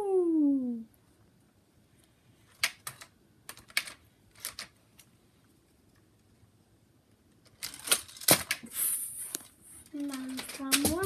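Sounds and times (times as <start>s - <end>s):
plastic toys clicking and clattering: 2.5s - 5.1s, 7.4s - 8.7s, 9.3s - 11.0s.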